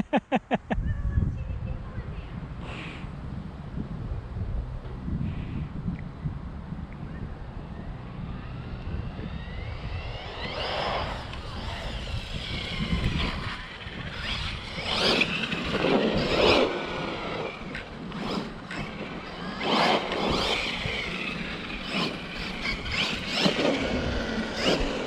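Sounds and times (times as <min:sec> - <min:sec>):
low rumble: 0:00.0 - 0:23.0
tyre and ground noise: 0:02.2 - 0:25.0
electric motor whining: 0:07.0 - 0:25.0.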